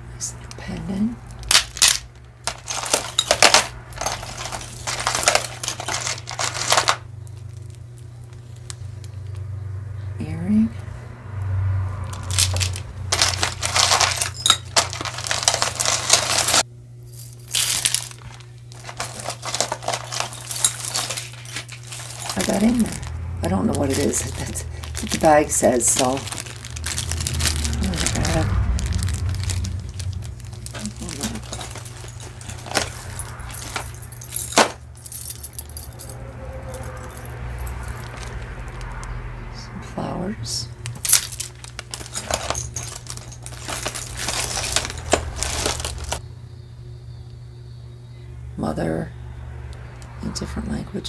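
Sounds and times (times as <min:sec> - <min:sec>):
metal jewelry clinking: 0:01.4 - 0:07.0, 0:12.1 - 0:38.5, 0:41.0 - 0:46.2.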